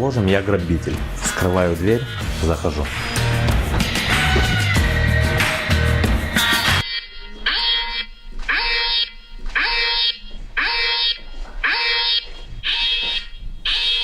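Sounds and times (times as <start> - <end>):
security alarm pulses: 6.8 - 14.0.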